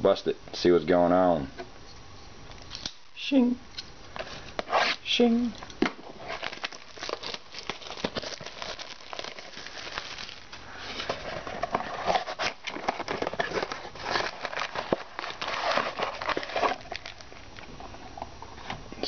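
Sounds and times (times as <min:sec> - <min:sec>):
plastic wrap and cardboard crinkling: 0:05.8 - 0:18.7.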